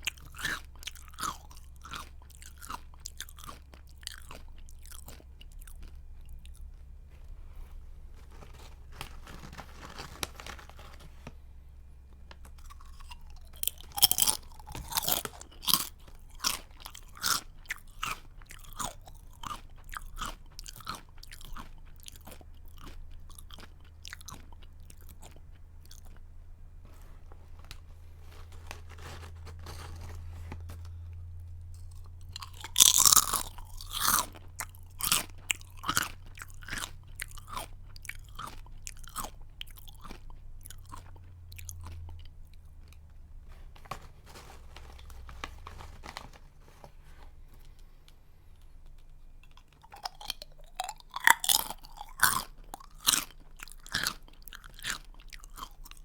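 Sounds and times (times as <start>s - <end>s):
person crunching snack: 0.0s - 7.0s, 12.4s - 26.3s, 26.9s - 31.2s, 31.8s - 43.0s, 48.6s - 56.0s.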